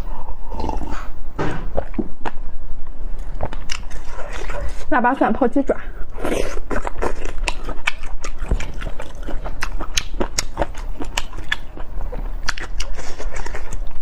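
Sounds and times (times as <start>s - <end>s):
crunchy chewing: 3.2s - 4.9s, 6.1s - 14.0s.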